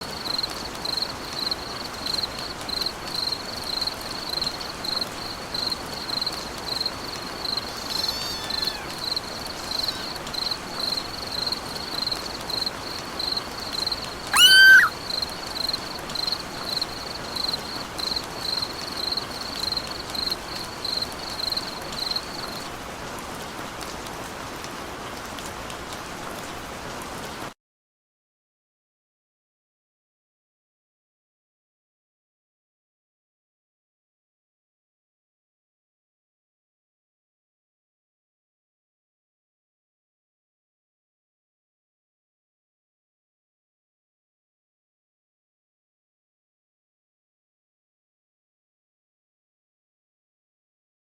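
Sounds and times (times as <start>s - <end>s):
steady rain falling: 0.0s - 27.6s
gliding call: 14.4s - 14.9s
high chirp: 14.4s - 14.9s.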